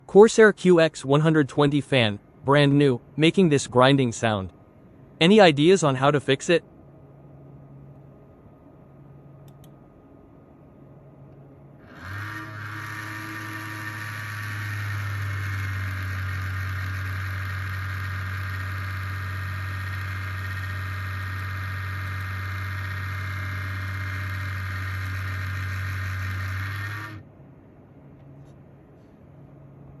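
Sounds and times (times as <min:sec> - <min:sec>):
pc fan grinding: 0:11.8 - 0:27.2.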